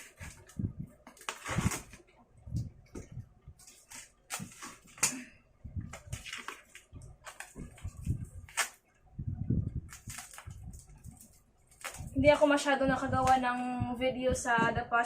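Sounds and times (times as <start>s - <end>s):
hands rustling plastic wrapping: 0.0s - 2.1s, 5.8s - 8.8s, 9.8s - 12.6s.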